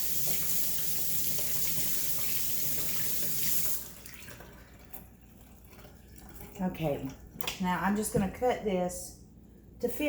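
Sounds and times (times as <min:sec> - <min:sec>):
faucet running water: 0:00.0 - 0:07.4.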